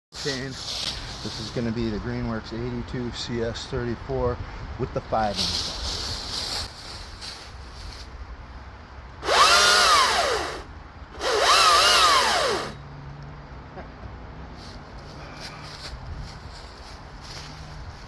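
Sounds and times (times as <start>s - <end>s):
electric chainsaw motor whining: 9.2s - 12.8s.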